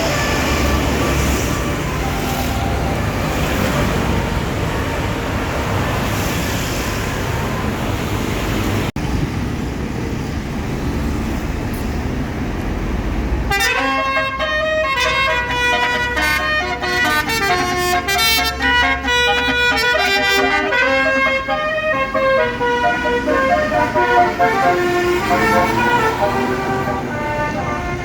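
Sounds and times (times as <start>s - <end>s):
multi-tone bus horn melody: 0.0s - 5.7s, 13.5s - 28.0s
bus engines and traffic: 0.0s - 28.0s.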